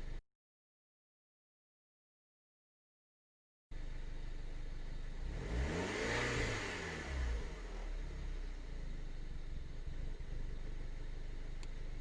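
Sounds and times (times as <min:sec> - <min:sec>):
car engine revving and idling: 0:03.8 - 0:12.0.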